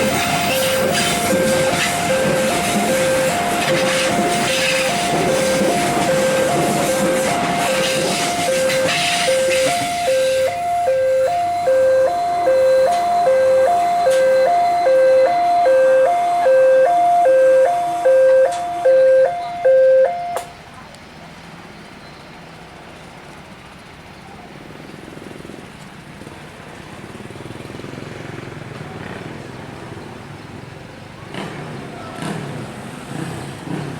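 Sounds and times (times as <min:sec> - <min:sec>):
two-tone crossing warning alarm: 0:00.0 - 0:20.6
faint road traffic: 0:00.0 - 0:33.9.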